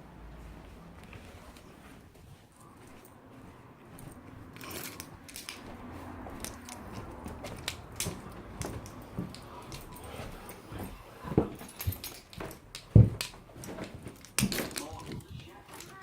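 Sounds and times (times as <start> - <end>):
rustling handling noise: 0.3 - 16.0
sharp clicks and light knocks: 4.0 - 16.0.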